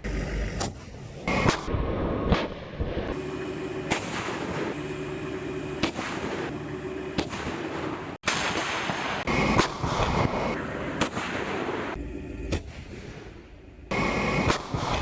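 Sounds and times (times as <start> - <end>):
vehicle engine hum: 0.0 - 8.2, 9.2 - 15.0
vehicle weapon shots: 0.0 - 15.0.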